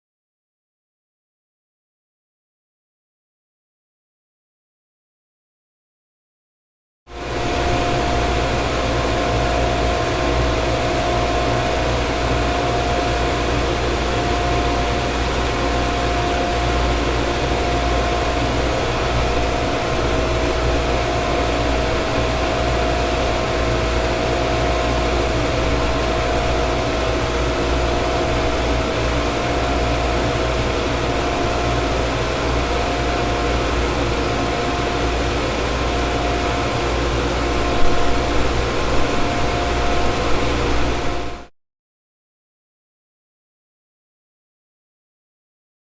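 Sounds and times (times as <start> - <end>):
mid-pitched mechanical whine: 7.1 - 41.5.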